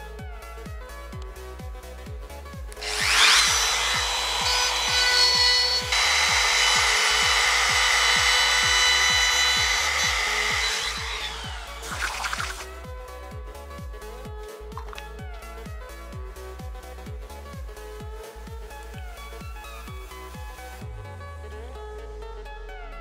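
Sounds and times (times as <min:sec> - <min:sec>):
background music with steady beat: 0:00.0 - 0:23.0
power tool grinding wood: 0:02.8 - 0:12.7.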